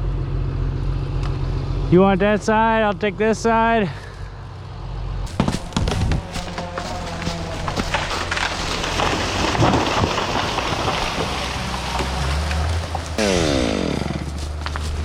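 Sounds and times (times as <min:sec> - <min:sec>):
engine running: 0:00.0 - 0:15.0
wood cracking and splintering: 0:05.3 - 0:15.0.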